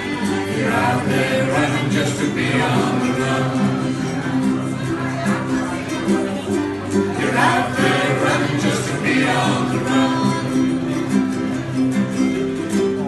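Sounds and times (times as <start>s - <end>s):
person singing: 0.0s - 4.8s, 7.2s - 11.6s
ukulele playing: 0.0s - 13.0s.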